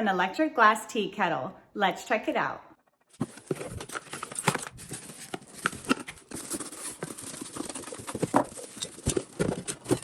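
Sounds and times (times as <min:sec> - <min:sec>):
packaging rustling and crinkling: 0:03.1 - 0:10.0.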